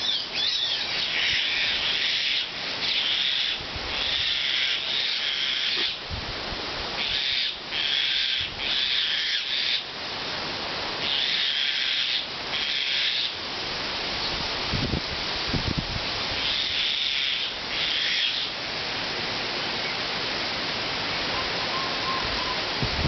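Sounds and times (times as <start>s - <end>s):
wind blowing hard: 6.0s - 7.0s, 14.0s - 16.5s, 21.0s - 23.0s
wind buffeting microphone: 14.2s - 16.4s, 21.2s - 23.0s.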